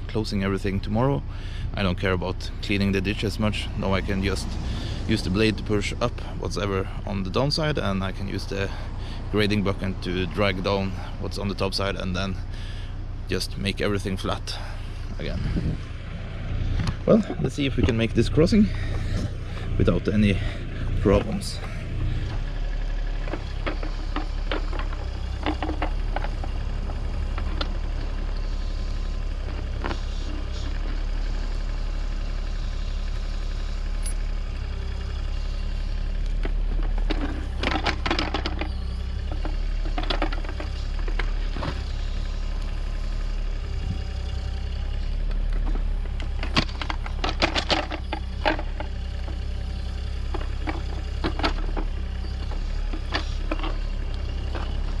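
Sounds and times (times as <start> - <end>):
excavator engine running: 0.0 - 55.0
soil and stones scraping bucket: 23.2 - 31.0, 36.4 - 41.9, 50.2 - 55.0.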